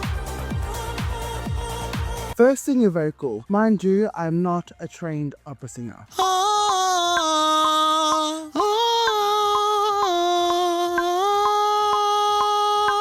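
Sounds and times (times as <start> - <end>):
person singing sustained notes: 6.1 - 13.0.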